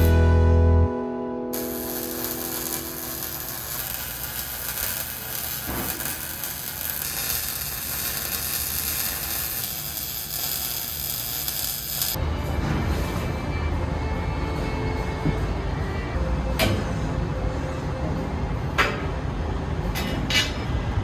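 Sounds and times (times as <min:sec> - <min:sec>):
welding arc crackling: 0:00.0 - 0:00.2, 0:01.5 - 0:12.2.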